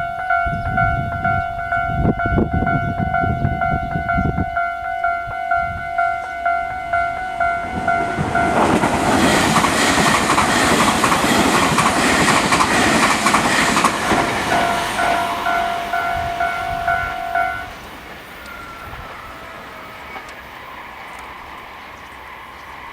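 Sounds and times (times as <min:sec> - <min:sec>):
level crossing warning bell: 0:00.0 - 0:21.1
electric train passing: 0:00.0 - 0:22.9
train wheels clicking over track: 0:05.4 - 0:22.9.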